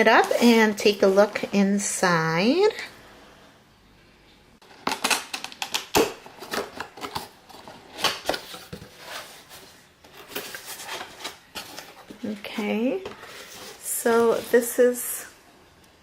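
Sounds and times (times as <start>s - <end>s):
rustling and scraping: 6.3s - 15.1s.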